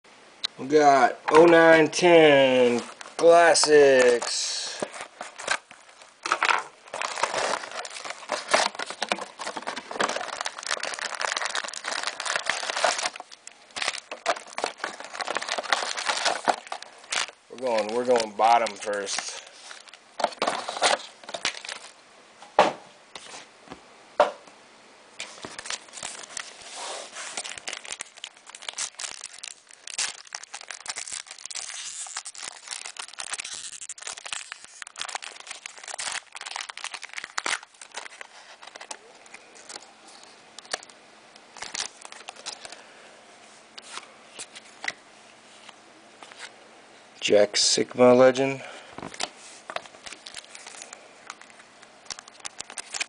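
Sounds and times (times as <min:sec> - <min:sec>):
card pack wrappers tearing: 0:02.6 - 0:22.0, 0:25.2 - 0:40.9, 0:41.6 - 0:42.8, 0:49.1 - 0:53.0.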